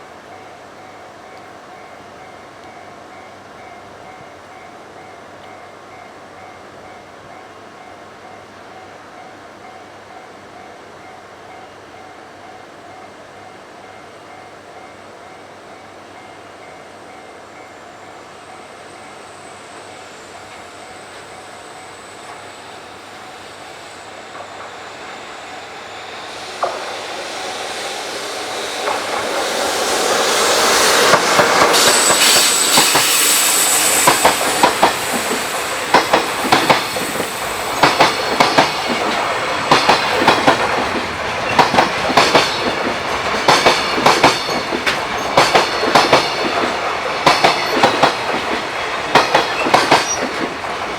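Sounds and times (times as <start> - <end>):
freight train passing: 0.0 - 50.9
high wheel squeal: 18.9 - 40.2
wheels clacking over rail joints: 24.3 - 33.2, 34.0 - 50.9.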